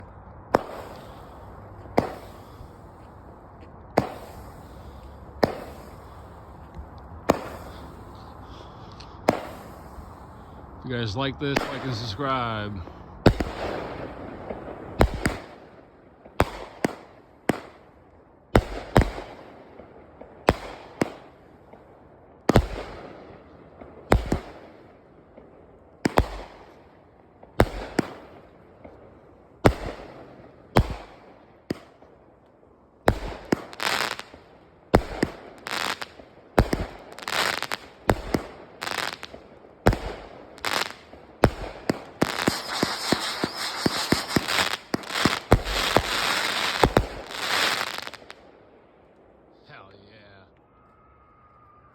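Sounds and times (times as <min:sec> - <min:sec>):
firework crackling: 0:00.0 - 0:17.9, 0:29.6 - 0:32.0, 0:33.0 - 0:48.4
firework bangs: 0:00.4 - 0:03.1, 0:03.9 - 0:10.2, 0:11.0 - 0:17.9, 0:18.6 - 0:21.8, 0:22.5 - 0:29.0, 0:29.6 - 0:32.1, 0:33.0 - 0:48.4.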